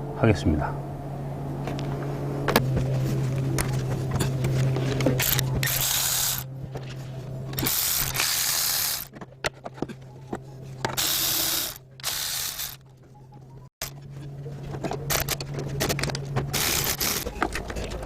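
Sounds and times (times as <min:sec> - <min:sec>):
steady low hum: 0:00.0 - 0:18.0
ratchet wrench ratcheting: 0:05.1 - 0:06.5, 0:07.5 - 0:09.1, 0:10.9 - 0:12.8, 0:15.0 - 0:17.6
sharp tool clicks: 0:05.2 - 0:06.5, 0:07.5 - 0:09.1, 0:10.9 - 0:12.8, 0:15.1 - 0:17.3.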